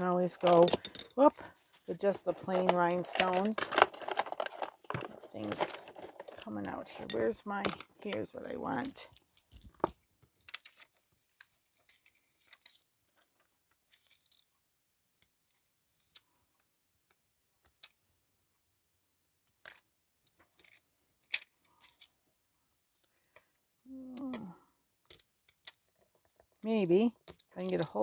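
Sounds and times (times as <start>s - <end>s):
plastic sheet clicks and rustles: 2.2s - 14.4s.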